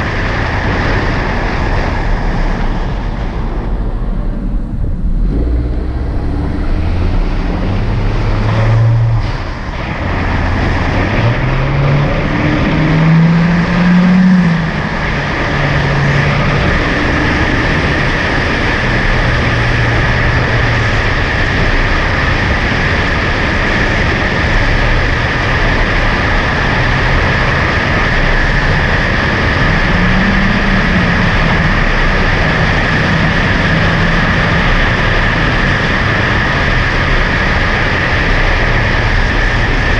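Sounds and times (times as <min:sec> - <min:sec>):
car exhaust revving: 0:00.0 - 0:39.9
road and wind noise: 0:00.0 - 0:39.9.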